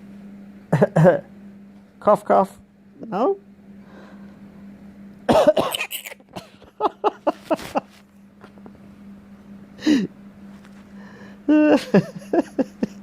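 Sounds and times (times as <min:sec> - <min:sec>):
person coughing: 0:05.3 - 0:06.6.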